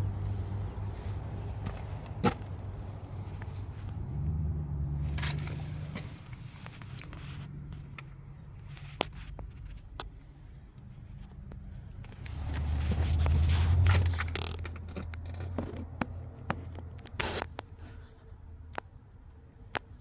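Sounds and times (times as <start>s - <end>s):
vehicle engine rumble: 0.0s - 20.0s
clicks and scrapes: 12.0s - 18.2s.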